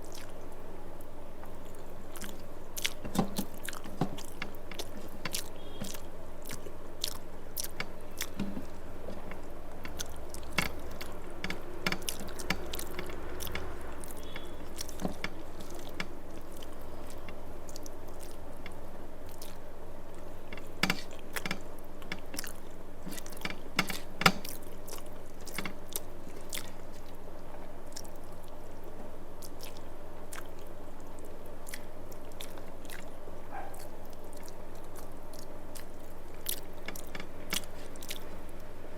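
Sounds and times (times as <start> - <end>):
lip smacks: 0.0 - 0.4, 1.4 - 11.2
small mouth clicks: 0.0 - 0.5, 1.4 - 11.2, 33.8 - 38.3
person chewing food: 0.0 - 28.6, 29.4 - 38.7
low background hum: 0.0 - 38.9.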